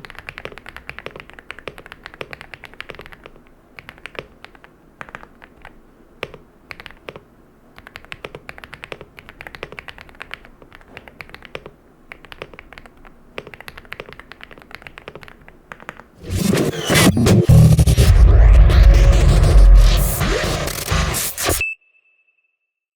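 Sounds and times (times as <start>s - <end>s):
mechanical keyboard typing: 0.0s - 16.1s
loud music: 16.2s - 21.6s.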